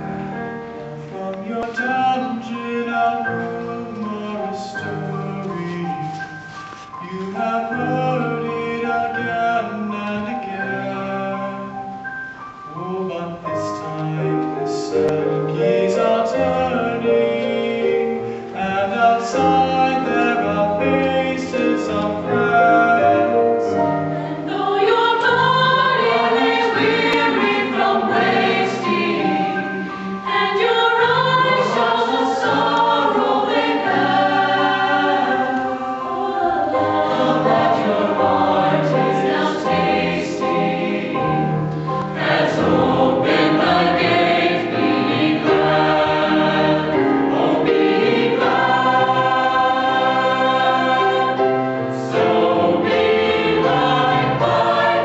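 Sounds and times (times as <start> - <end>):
instrumental accompaniment: 0.0 - 55.0
choir singing gospel song: 12.7 - 55.0.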